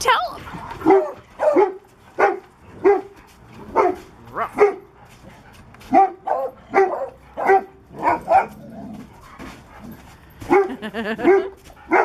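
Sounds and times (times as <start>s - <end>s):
dog barking: 0.8s - 5.0s, 5.8s - 8.6s, 10.5s - 12.0s.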